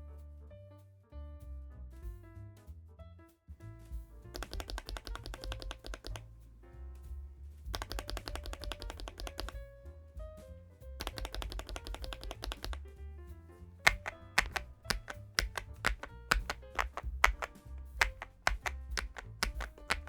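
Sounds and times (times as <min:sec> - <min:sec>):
mechanical keyboard key clacks: 0:04.4 - 0:06.2, 0:07.7 - 0:09.7, 0:11.0 - 0:12.8, 0:13.9 - 0:20.0.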